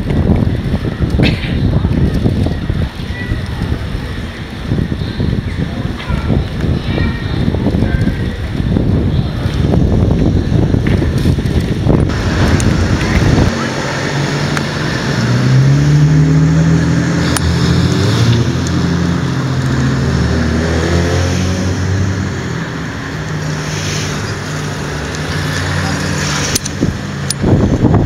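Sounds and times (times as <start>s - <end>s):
wind buffeting microphone: 0.0s - 28.0s
engine humming: 7.6s - 28.0s.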